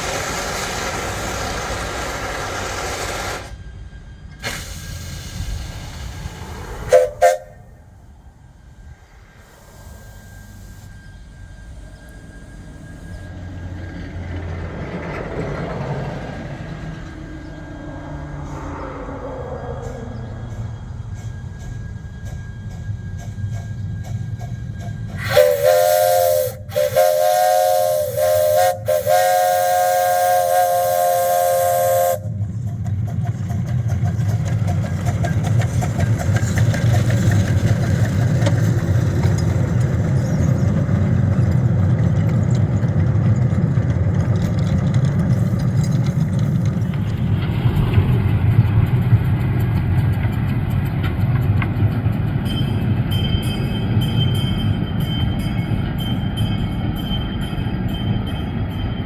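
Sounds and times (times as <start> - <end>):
train rumbling: 0.0 - 59.0
steam locomotive chime whistle: 3.2 - 8.9, 9.5 - 14.3, 19.8 - 32.6, 52.4 - 59.0.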